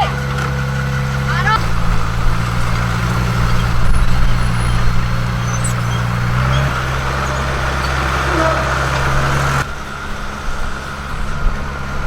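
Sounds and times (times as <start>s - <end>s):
heavy diesel engine running: 0.0s - 12.0s.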